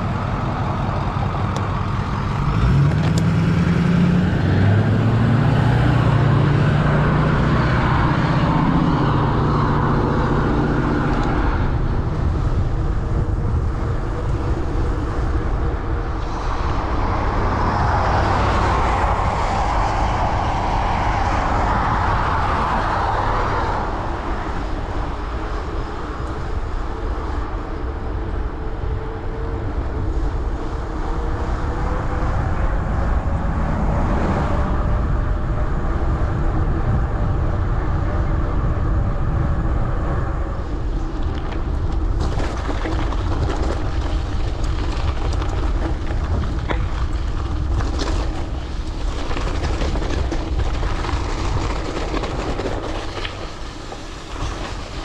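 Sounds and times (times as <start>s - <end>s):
vehicle engine passing: 0.0s - 12.6s
bicycle road noise: 0.0s - 55.0s
wind noise: 0.0s - 55.0s.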